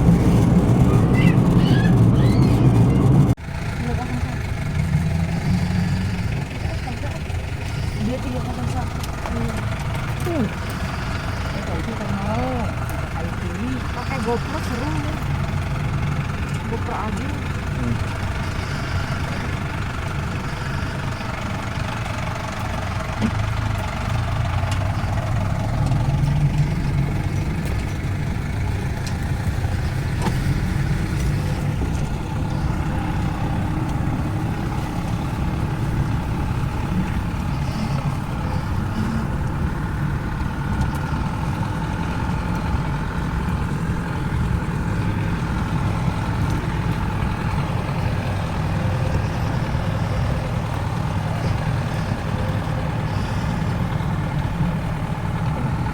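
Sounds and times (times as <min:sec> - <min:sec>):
vehicle engine running: 0:00.0 - 0:55.9.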